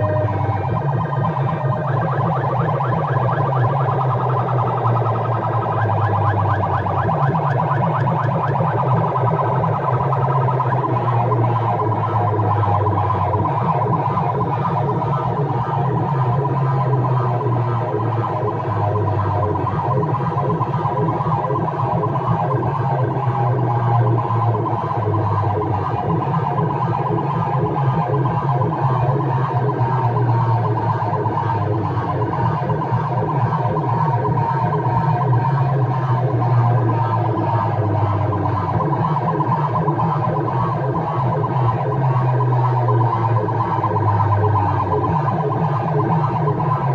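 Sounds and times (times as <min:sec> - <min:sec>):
loud music from speakers: 0:00.0 - 0:05.8
rising siren-like chirp: 0:00.0 - 0:46.9.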